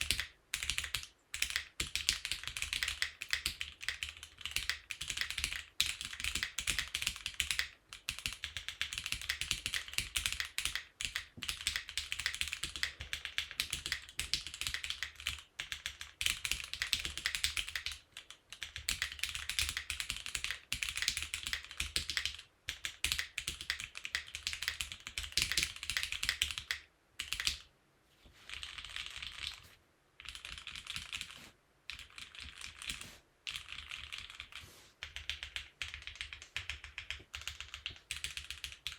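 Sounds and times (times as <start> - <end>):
mechanical keyboard typing: 0.0 - 27.7, 28.5 - 38.9.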